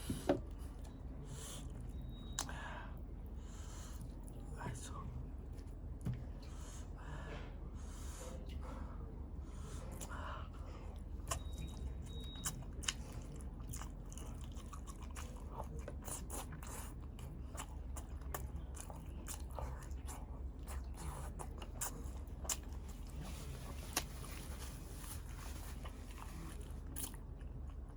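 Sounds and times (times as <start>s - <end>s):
person chewing with crunches: 10.9s - 27.9s.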